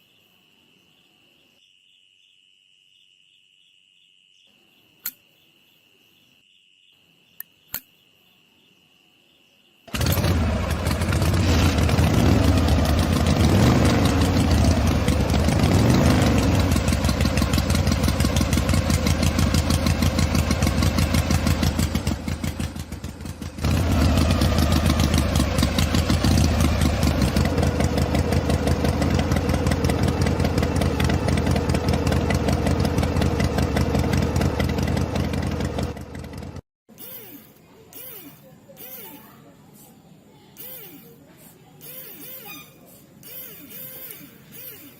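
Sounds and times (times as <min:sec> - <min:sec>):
small engine chugging: 0:09.9 - 0:39.9, 0:40.5 - 0:44.9.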